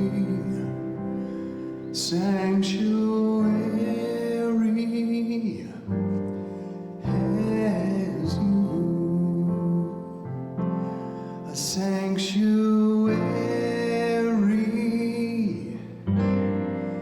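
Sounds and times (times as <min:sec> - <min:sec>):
person singing devotional song: 0:00.0 - 0:16.0
singer breathing: 0:01.1 - 0:01.9, 0:06.3 - 0:07.0, 0:10.7 - 0:11.5.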